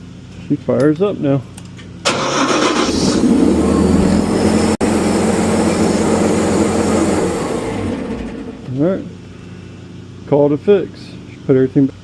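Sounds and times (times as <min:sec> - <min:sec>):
truck-mount unit running: 0:02.0 - 0:08.9.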